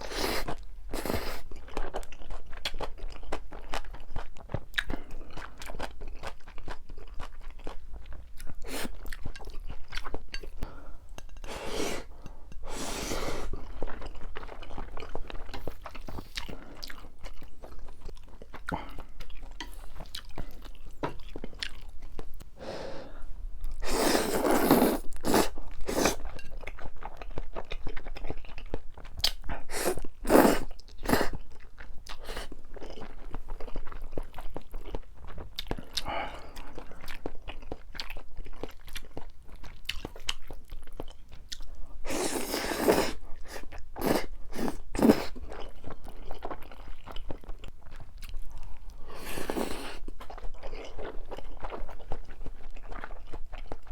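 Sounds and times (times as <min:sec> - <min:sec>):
chewing and crunching food: 0:00.0 - 0:22.5, 0:23.6 - 0:53.9.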